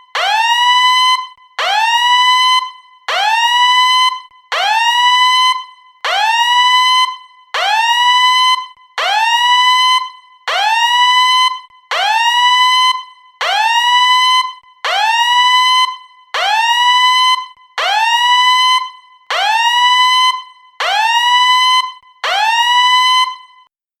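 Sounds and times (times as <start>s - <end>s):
fire alarm whooping: 0.2s - 23.7s.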